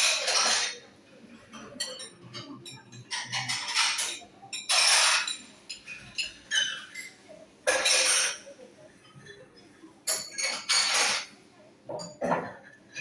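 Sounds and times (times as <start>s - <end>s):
cutlery clinking on dishes: 0.0s - 13.0s.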